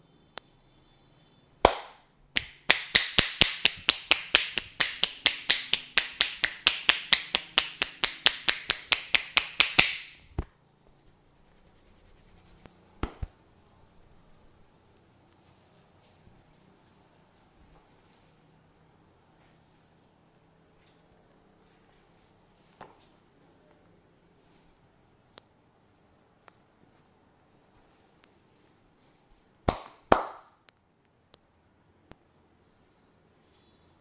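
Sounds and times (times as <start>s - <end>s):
hands slapping body in massage: 1.6s - 10.5s, 11.8s - 13.4s, 29.7s - 30.6s.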